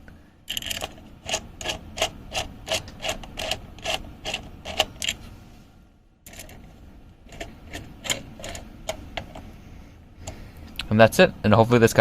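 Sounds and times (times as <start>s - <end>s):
screwdriver turning small screw: 0.5s - 5.2s.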